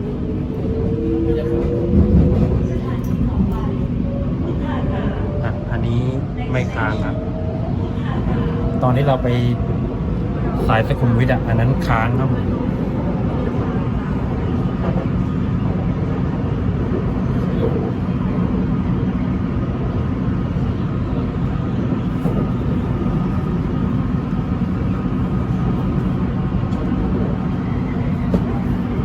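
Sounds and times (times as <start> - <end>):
electric train rumbling: 0.0 - 29.0.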